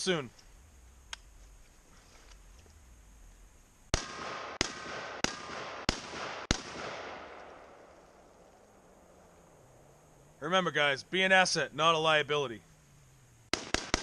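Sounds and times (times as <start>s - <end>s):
gunshot echo: 3.9s - 8.0s, 13.5s - 14.0s
rifle shots: 3.9s - 8.0s, 13.5s - 14.0s.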